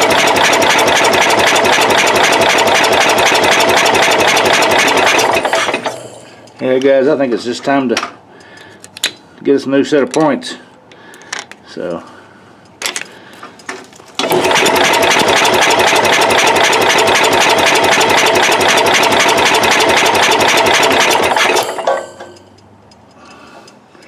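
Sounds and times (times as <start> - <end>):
lawn tractor engine cranking: 0.0 - 6.9, 13.8 - 22.5.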